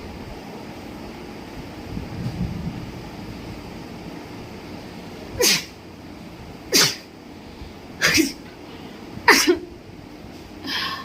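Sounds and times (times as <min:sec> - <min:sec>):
woman sneezing: 0:05.4 - 0:05.8, 0:06.7 - 0:07.1, 0:08.0 - 0:08.4, 0:09.3 - 0:09.6.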